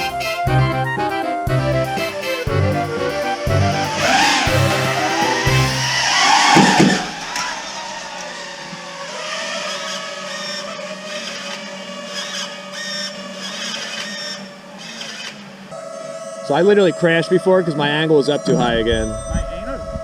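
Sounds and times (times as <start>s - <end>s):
music: 0.0s - 6.2s
quadcopter motors whining: 0.0s - 20.0s.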